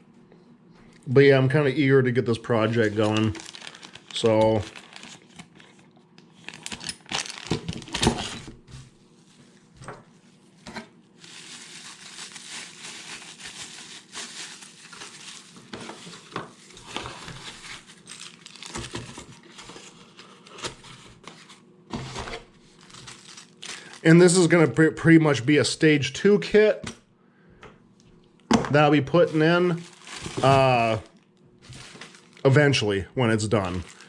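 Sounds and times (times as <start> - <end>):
packaging crinkling and rustling: 2.6 - 8.6, 10.6 - 24.1, 28.8 - 34.0.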